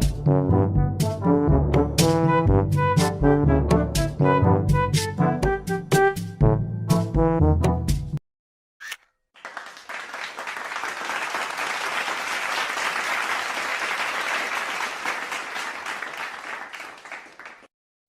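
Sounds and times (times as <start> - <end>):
audience applause: 9.4 - 17.7.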